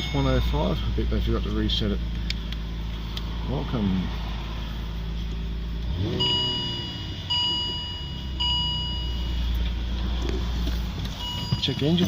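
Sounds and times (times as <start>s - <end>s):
car dashboard warning chime: 0.0s - 1.2s, 6.0s - 9.7s, 11.1s - 12.0s
car engine hum: 0.0s - 12.0s.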